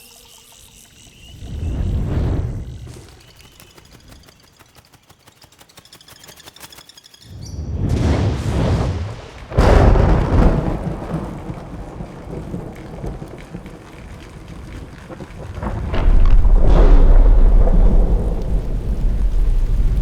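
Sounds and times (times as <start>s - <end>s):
rain: 0.0s - 5.2s, 7.7s - 20.0s
thunder rumbling: 7.5s - 20.0s
sharp thunderclap: 7.6s - 20.0s.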